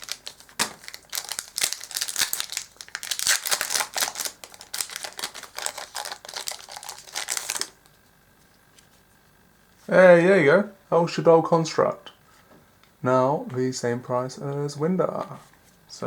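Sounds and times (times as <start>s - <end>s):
foil pack crinkling and tearing: 0.0s - 8.0s.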